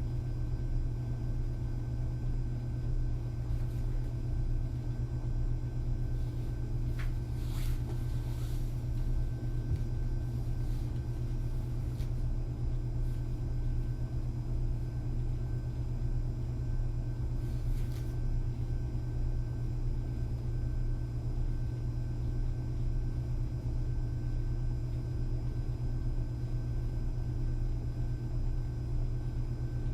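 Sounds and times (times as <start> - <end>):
steady low hum: 0.0 - 29.9
rustle of someone moving: 3.4 - 4.2, 6.0 - 13.4, 17.4 - 18.2.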